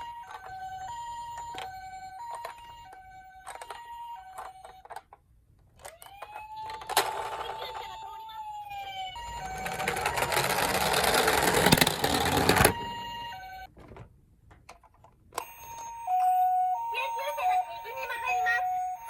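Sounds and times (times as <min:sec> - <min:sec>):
toy two-tone siren: 0:00.0 - 0:05.2, 0:05.8 - 0:13.7, 0:15.4 - 0:19.0
toy wheels rattling: 0:00.0 - 0:05.2, 0:05.8 - 0:13.0
small electronic voice: 0:16.8 - 0:19.0.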